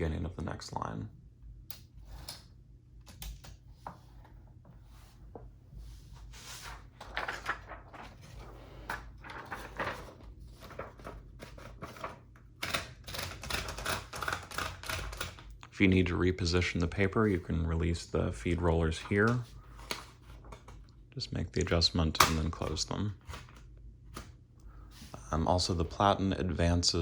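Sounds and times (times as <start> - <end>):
typewriter carriage rattles: 11.6 - 15.4
typewriter mechanical clicks: 12.6 - 15.4.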